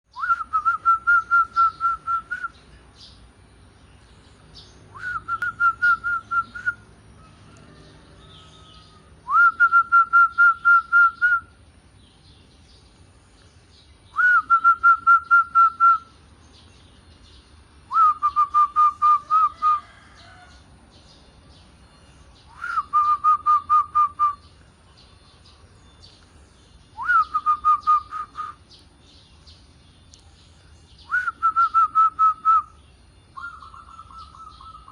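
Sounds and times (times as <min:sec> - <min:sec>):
dove cooing: 0:33.4 - 0:34.9.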